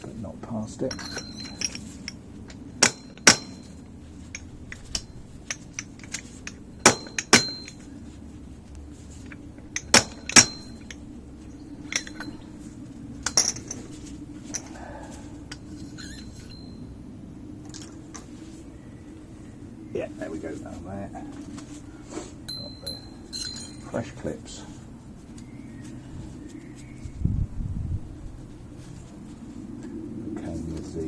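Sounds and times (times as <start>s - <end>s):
metal-on-metal clinks: 0.8s - 8.0s, 9.2s - 16.9s, 22.4s - 24.3s.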